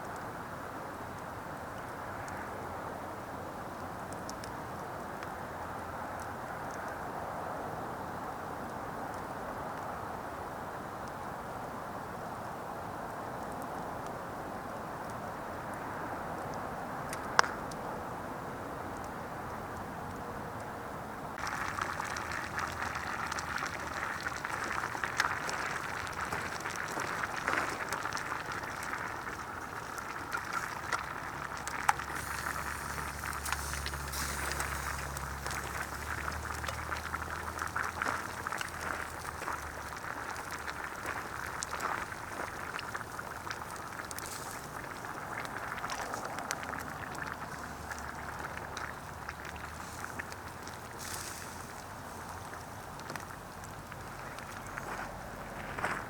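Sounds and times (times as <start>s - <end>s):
wood fire crackling and popping: 16.4s - 17.8s, 21.4s - 55.9s
steady hiss: 21.4s - 45.8s.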